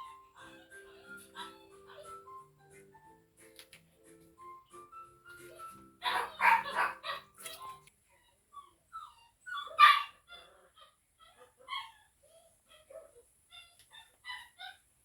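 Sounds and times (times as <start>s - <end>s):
dog barking: 6.0s - 7.3s, 9.7s - 10.2s.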